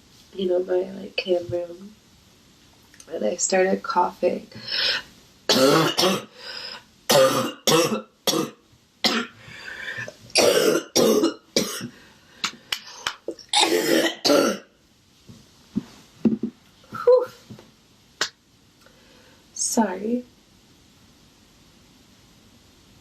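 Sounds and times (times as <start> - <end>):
woman coughing harshly: 5.5 - 6.3, 7.1 - 9.4, 10.4 - 11.9, 13.5 - 14.7.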